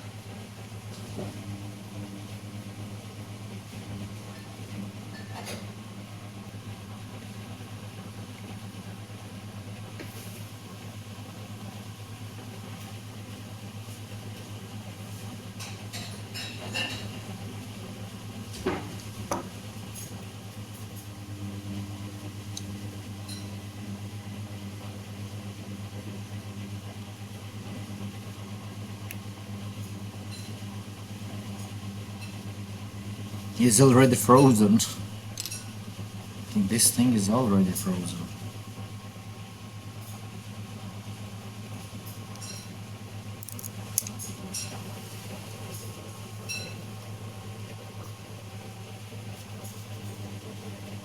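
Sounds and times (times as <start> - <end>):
freezing machine humming: 0.0 - 51.0
tool handling clicks: 35.4 - 35.6, 43.4 - 44.3.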